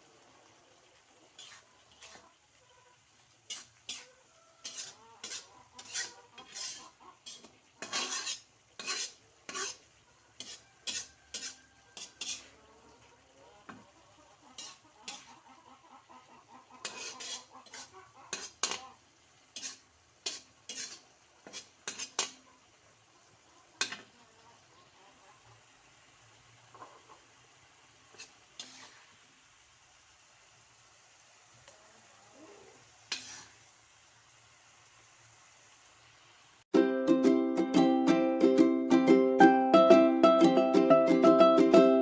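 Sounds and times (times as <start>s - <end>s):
utensils clinking on cookware: 3.5s - 9.8s, 10.4s - 12.5s, 16.8s - 18.9s, 19.6s - 22.4s.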